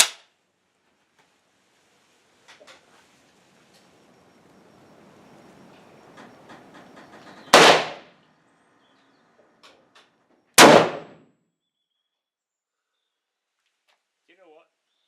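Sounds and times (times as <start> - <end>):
gunshots with echoing tail: 7.2 - 8.1, 10.6 - 11.2.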